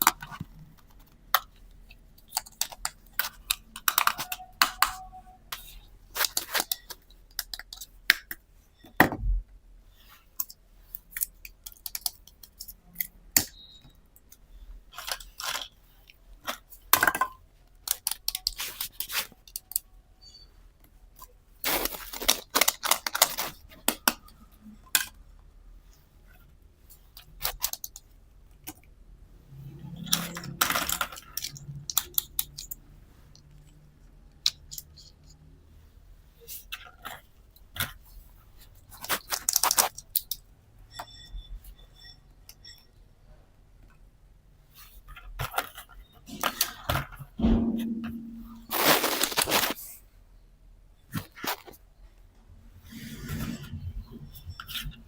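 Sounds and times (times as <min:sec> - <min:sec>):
plastic toy pieces clattering: 0:02.2 - 0:05.1, 0:21.7 - 0:24.2, 0:30.0 - 0:32.8, 0:38.9 - 0:40.4.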